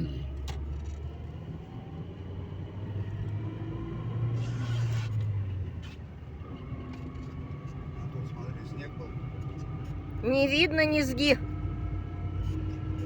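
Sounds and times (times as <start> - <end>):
car engine hum: 0.0 - 13.0
road noise inside car: 0.0 - 13.0.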